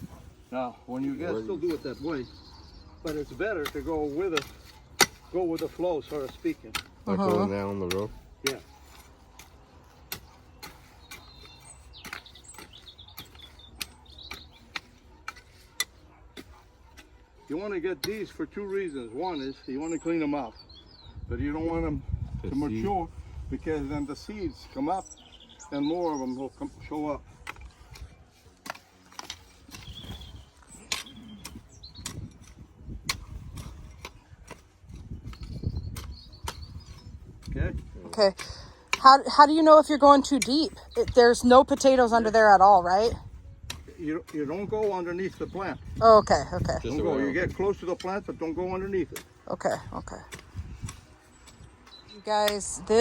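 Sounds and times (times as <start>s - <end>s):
hoe chopping soil: 0.0s - 20.8s, 22.5s - 53.0s.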